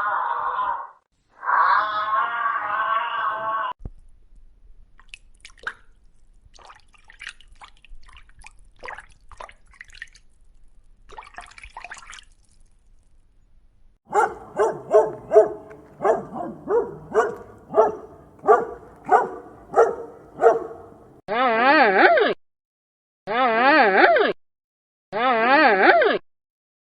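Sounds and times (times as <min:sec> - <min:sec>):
dog barking: 0:14.1 - 0:21.2.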